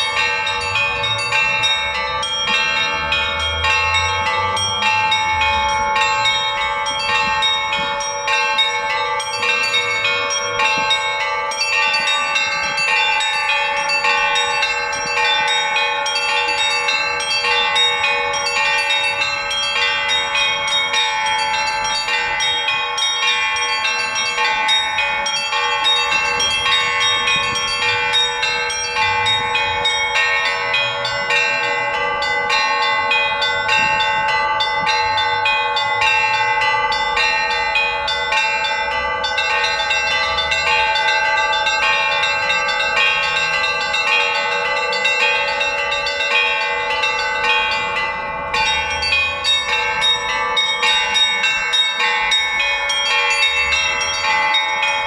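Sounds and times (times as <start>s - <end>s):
large bells ringing: 0.0s - 55.0s
small high church bells: 0.0s - 55.0s.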